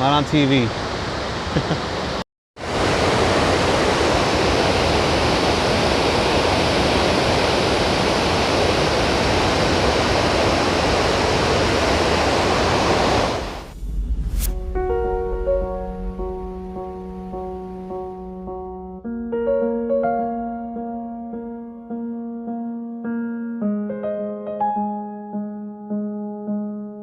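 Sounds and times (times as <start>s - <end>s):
waterfall roaring: 0.1s - 13.6s.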